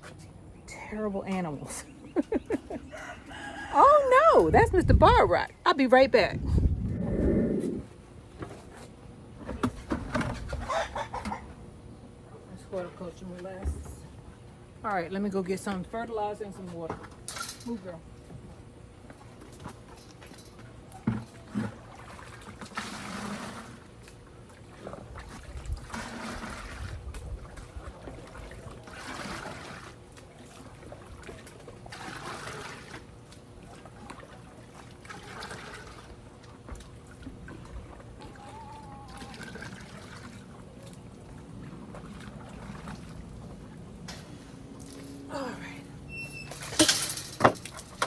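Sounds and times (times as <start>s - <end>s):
water pouring and trickling: 21.9s - 44.0s.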